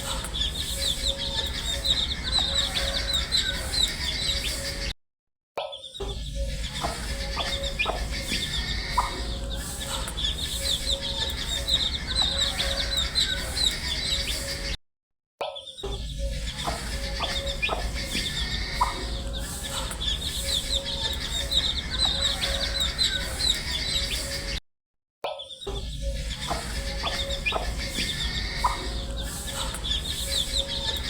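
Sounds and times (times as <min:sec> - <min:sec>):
baby chicks peeping: 0:00.0 - 0:04.9, 0:06.4 - 0:14.7, 0:16.2 - 0:24.6, 0:25.6 - 0:31.0.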